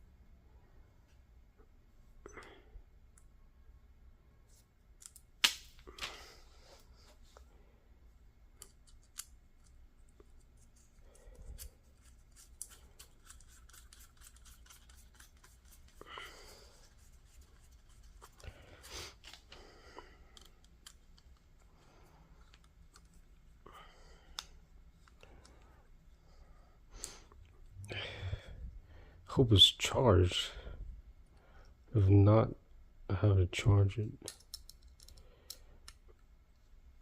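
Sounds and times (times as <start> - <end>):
small parts clicking and rustling: 4.9 - 6.2, 8.5 - 16.0, 20.2 - 23.6, 34.2 - 36.7.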